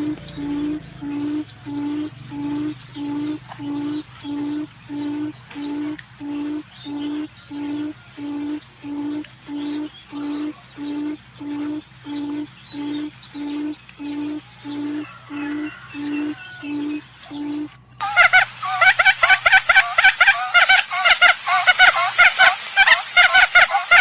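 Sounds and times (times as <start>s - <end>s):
faint bird chirps: 0.0s - 17.8s
low hooting bird call: 0.0s - 24.0s.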